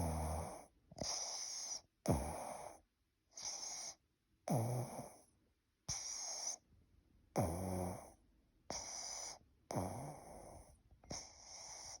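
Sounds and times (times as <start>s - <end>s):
person snoring: 0.0s - 0.7s, 4.5s - 5.2s, 7.4s - 10.6s.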